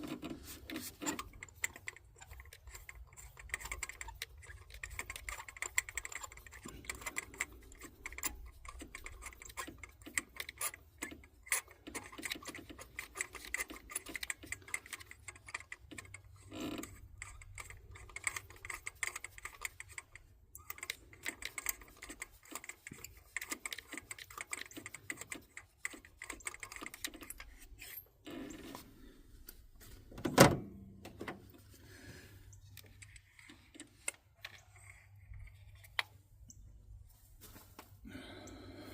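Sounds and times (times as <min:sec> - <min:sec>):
ratchet wrench clicking: 0:00.0 - 0:27.9.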